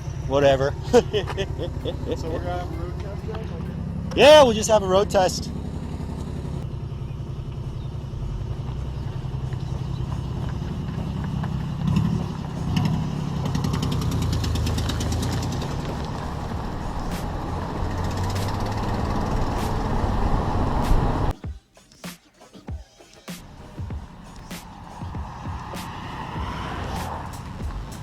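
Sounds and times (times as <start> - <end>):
car engine rumble: 0.0 - 21.4, 23.4 - 28.0
rapid ticking: 0.0 - 21.4, 22.0 - 28.0
tyre and wind noise: 8.2 - 21.3.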